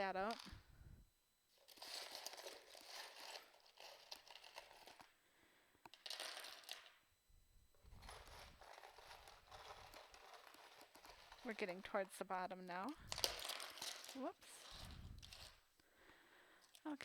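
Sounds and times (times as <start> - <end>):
jewelry clinking and rustling: 0.0 - 0.7, 1.5 - 5.2, 5.9 - 7.0, 7.7 - 15.7.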